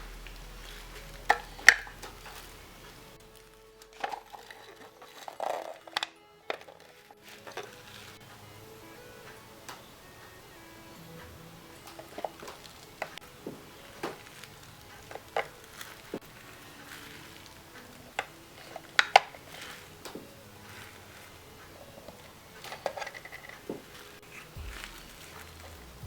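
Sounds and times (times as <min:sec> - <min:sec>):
plastic toys clicking and tapping: 0:00.0 - 0:08.6, 0:11.6 - 0:25.9.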